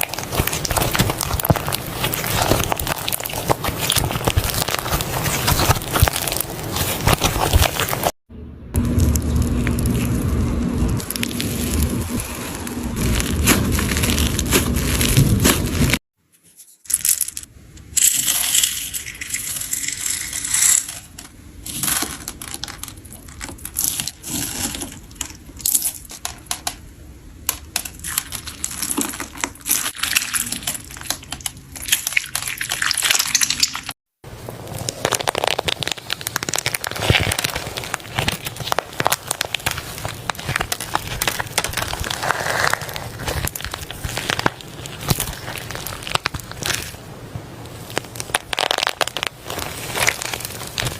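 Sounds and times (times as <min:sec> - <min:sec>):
slime bubbles popping: 0:00.0 - 0:08.1, 0:34.7 - 0:47.0, 0:47.7 - 0:50.9.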